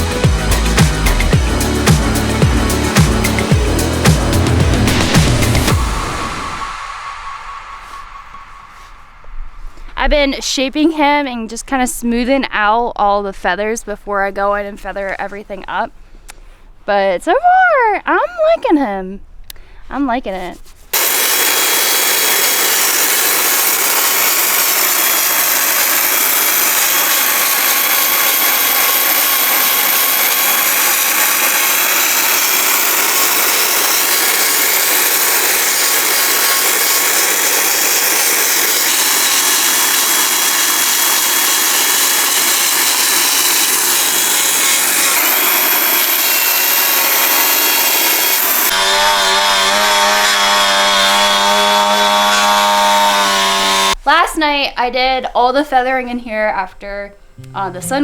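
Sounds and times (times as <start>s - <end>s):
power tool grinding wood: 0.0s - 6.7s, 20.9s - 54.0s
pitched power tool running: 0.0s - 7.7s, 21.0s - 54.0s.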